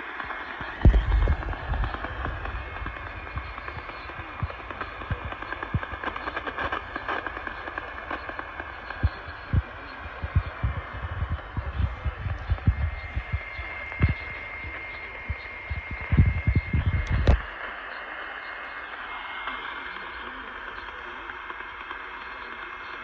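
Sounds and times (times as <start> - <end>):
faint steady tone: 0.0 - 23.0
radio static hiss: 0.0 - 23.0
low thumps and pops: 0.6 - 6.8, 7.4 - 17.5.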